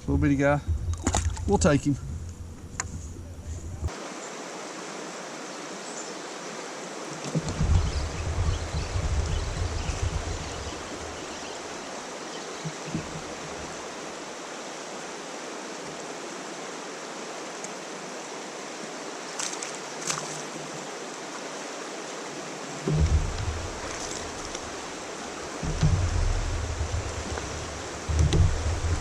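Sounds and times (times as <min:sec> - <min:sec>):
low rumbling: 0:00.0 - 0:03.9, 0:07.4 - 0:11.7, 0:22.9 - 0:29.0
river water flowing: 0:03.8 - 0:29.0.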